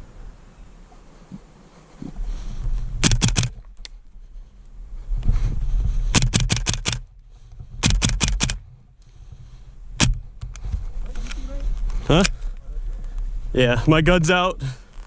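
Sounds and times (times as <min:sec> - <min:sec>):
wind rumble on microphone: 0:00.0 - 0:06.3, 0:08.5 - 0:14.6
airsoft rifle shots: 0:03.0 - 0:03.6, 0:06.1 - 0:07.1, 0:07.8 - 0:08.7, 0:10.0 - 0:10.3.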